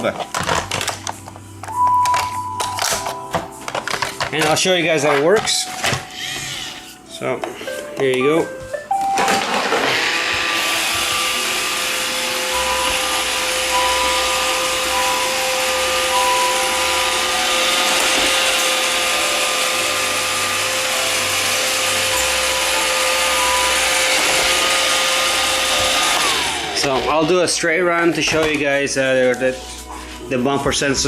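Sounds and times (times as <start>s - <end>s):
robot vacuum whirring: 9.2s - 27.4s.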